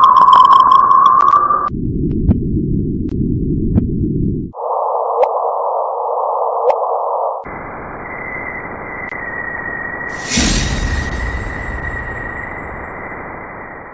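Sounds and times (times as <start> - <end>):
high whistle tone: 8.2 - 13.9.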